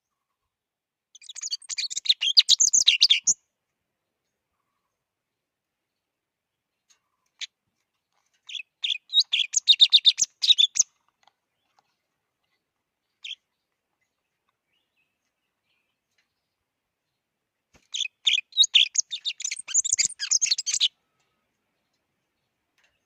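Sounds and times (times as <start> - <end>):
sparrow chirping: 1.1 - 3.4, 8.4 - 16.6, 17.2 - 21.0.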